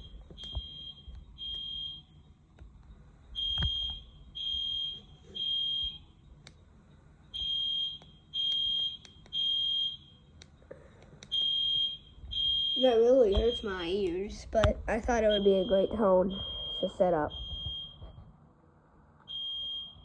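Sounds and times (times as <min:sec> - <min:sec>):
fire alarm horn beeping: 0:00.0 - 0:02.4, 0:03.0 - 0:10.4, 0:11.3 - 0:13.9, 0:15.2 - 0:18.3, 0:19.2 - 0:20.0.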